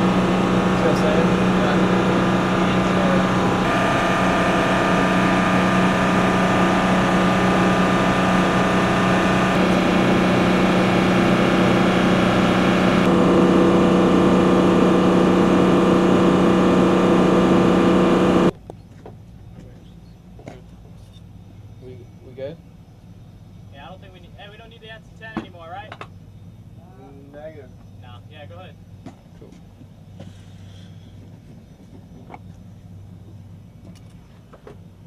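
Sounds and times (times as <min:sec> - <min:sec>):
loud machinery drone: 0:00.0 - 0:18.6.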